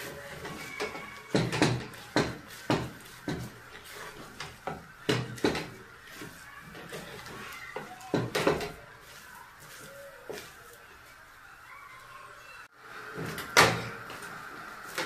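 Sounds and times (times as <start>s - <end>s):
cooking stick knocking on pot: 0.3s - 8.8s.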